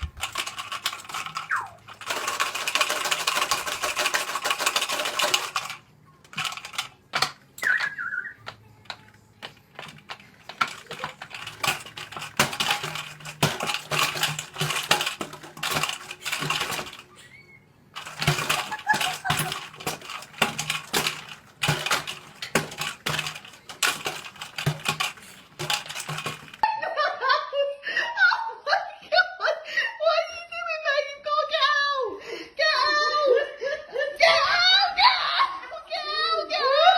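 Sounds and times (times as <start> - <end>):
small hard objects clattering: 0.0 - 26.6.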